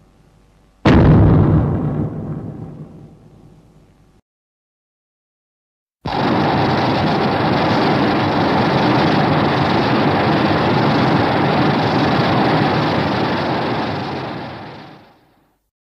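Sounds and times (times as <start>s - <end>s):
loud rushing and rumbling noise: 6.1s - 15.0s.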